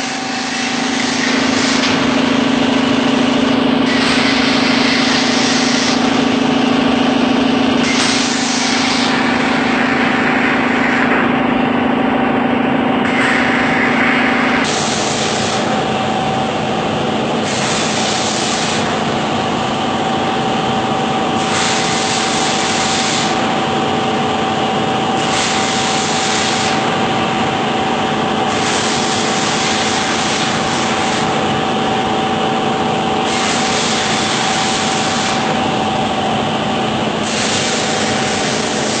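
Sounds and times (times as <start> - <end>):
laser cutting machine humming: 0.0 - 39.0
high gas hiss: 14.4 - 16.6.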